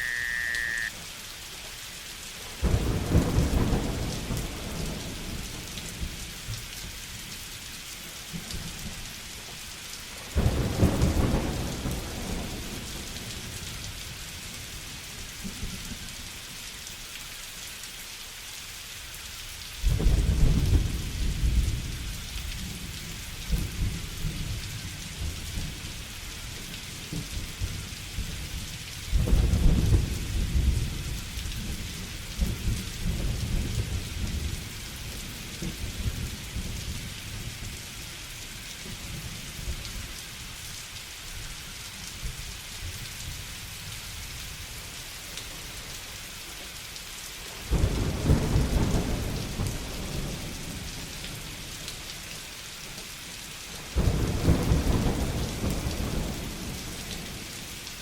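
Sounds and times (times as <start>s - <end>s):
heavy rain hiss: 0.0s - 58.0s
rolling thunder: 10.4s - 13.3s.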